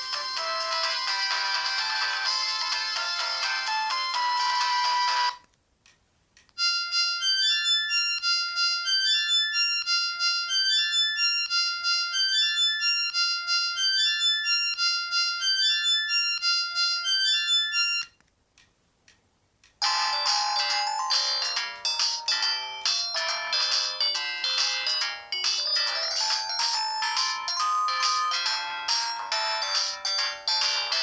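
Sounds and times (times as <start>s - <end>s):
mobile phone ringtone melody: 0.0s - 5.4s, 6.6s - 18.2s, 19.8s - 31.0s.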